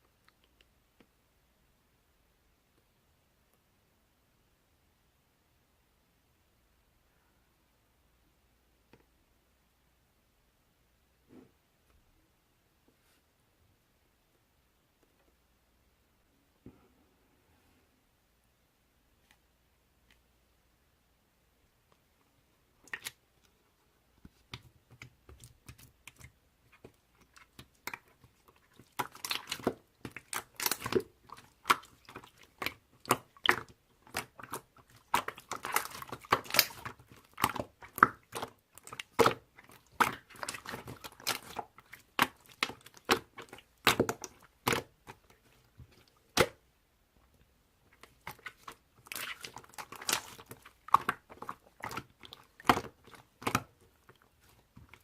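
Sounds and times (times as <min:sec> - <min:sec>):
crackling and crunching: 0:24.4 - 0:46.6, 0:47.9 - 0:55.0.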